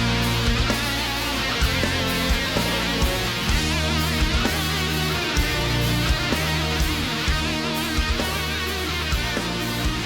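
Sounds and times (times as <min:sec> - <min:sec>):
guitar-led instrumental music: 0:00.0 - 0:10.0.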